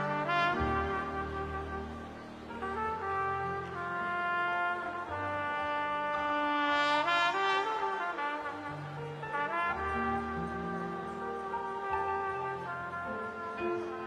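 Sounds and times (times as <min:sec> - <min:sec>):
low sustained accompaniment: 0:00.0 - 0:07.2
solo trumpet melody: 0:00.0 - 0:14.0.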